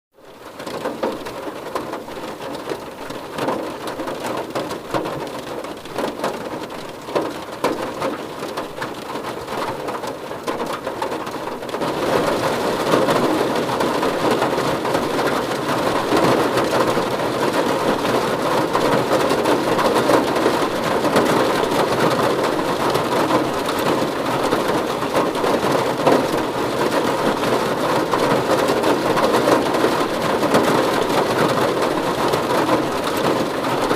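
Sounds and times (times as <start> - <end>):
rain pattering on car roof: 0.2 - 33.9.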